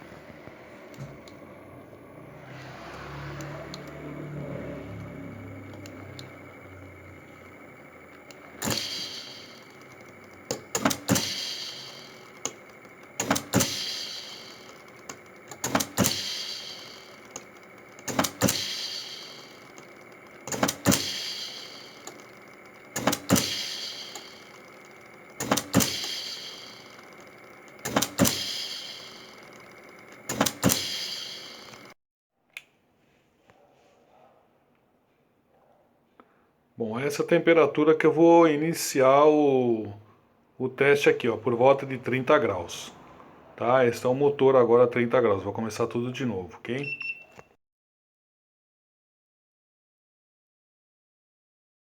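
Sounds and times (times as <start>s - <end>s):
ventilator air hiss: 0.0s - 32.0s
ventilator clicks: 0.2s - 32.0s.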